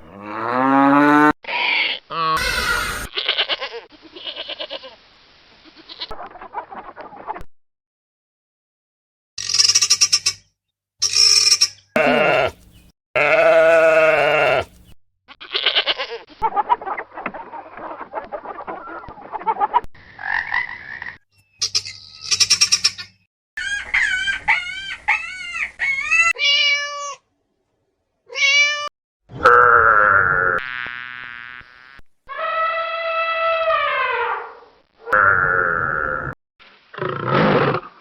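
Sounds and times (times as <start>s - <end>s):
farm animal calls: 11.0s - 16.1s.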